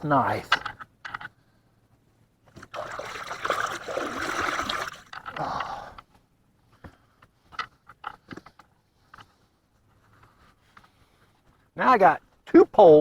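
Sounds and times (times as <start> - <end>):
water splashing and rushing: 2.6 - 5.2.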